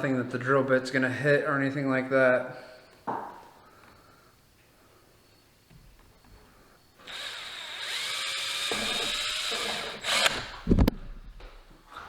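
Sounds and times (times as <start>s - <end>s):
power drill running: 7.0s - 10.6s.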